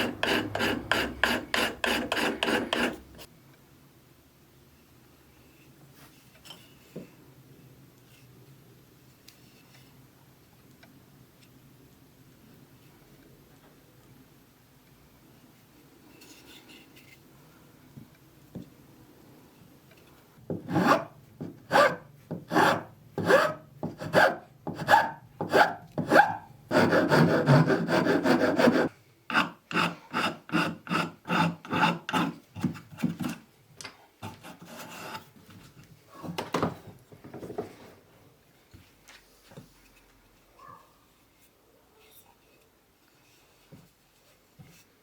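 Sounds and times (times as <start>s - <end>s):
hand tool rasping strokes: 0.0s - 3.3s, 21.7s - 32.4s.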